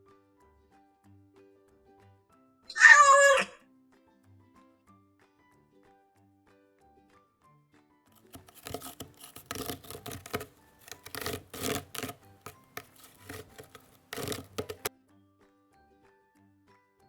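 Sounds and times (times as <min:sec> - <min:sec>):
cat claws scratching: 0:08.2 - 0:14.9.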